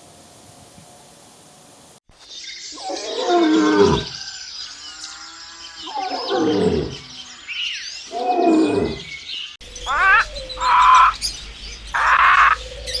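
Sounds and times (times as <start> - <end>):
birds chirping: 2.2 - 13.0
large animal roaring: 2.9 - 4.2, 5.7 - 7.2, 8.1 - 9.2.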